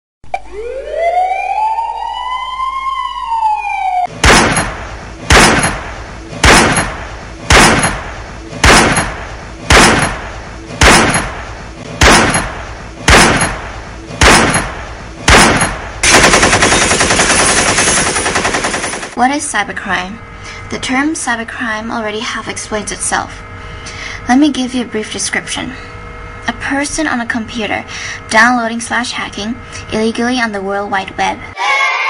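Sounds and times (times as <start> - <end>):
siren winding up and down: 0.2 - 4.2
rapid machine-gun fire: 4.1 - 11.4, 12.0 - 19.2
loud single bangs: 4.1 - 16.0.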